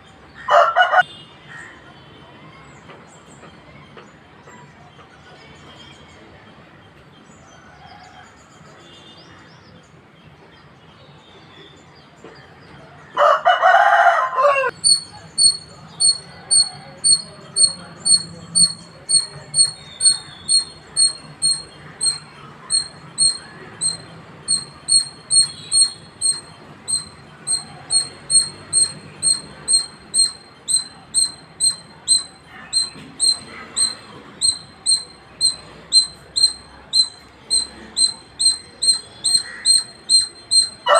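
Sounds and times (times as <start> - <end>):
harsh squirrel call: 14.6 - 40.9
squirrel chirping: 14.7 - 40.9.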